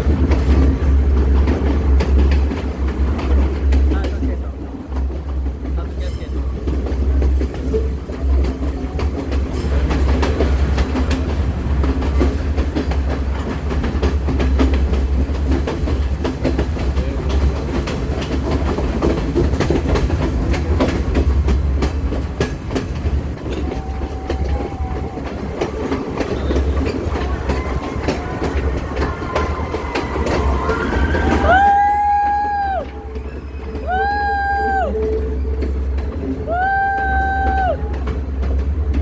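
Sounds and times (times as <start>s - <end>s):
train rumbling on rails: 0.0s - 39.0s
wheels clicking over track: 0.0s - 39.0s
wheels squealing: 22.5s - 38.0s.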